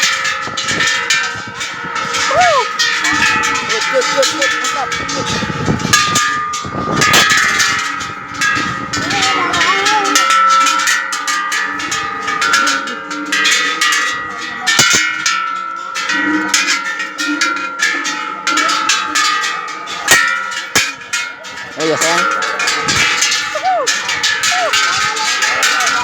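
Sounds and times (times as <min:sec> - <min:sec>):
temple bells clanging: 0:00.0 - 0:26.0.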